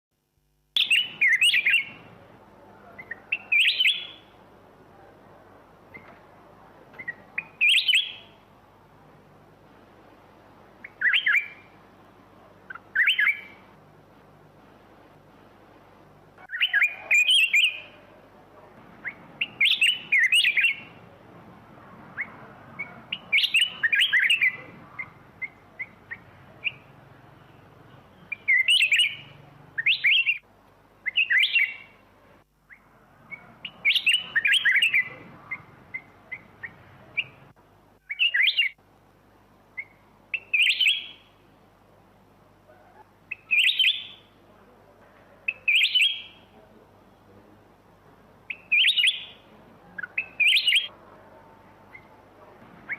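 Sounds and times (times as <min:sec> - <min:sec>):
bird singing warbled phrases: 0:00.8 - 0:04.4, 0:05.9 - 0:08.5, 0:10.8 - 0:11.8, 0:12.4 - 0:13.7, 0:16.4 - 0:21.2, 0:22.0 - 0:32.0, 0:32.6 - 0:38.8, 0:39.7 - 0:41.4, 0:42.7 - 0:44.4, 0:45.4 - 0:47.3, 0:48.4 - 0:51.0, 0:51.7 - 0:52.9
faint bird chirps: 0:00.8 - 0:05.2, 0:05.9 - 0:06.2, 0:06.8 - 0:08.5, 0:10.8 - 0:11.8, 0:12.4 - 0:13.7, 0:16.4 - 0:21.2, 0:22.1 - 0:32.0, 0:32.6 - 0:38.8, 0:39.7 - 0:41.4, 0:42.7 - 0:44.4, 0:45.2 - 0:46.8, 0:48.4 - 0:52.9.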